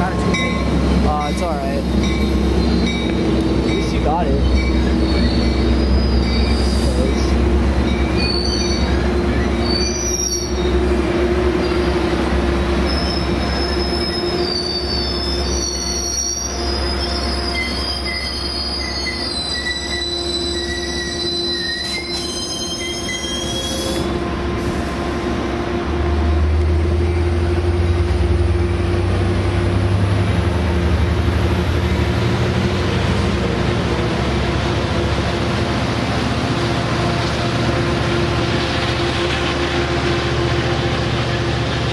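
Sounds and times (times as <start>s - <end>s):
train rumble: 0.0s - 41.9s
train wheels squealing: 2.0s - 3.1s, 3.7s - 10.8s, 12.8s - 24.1s.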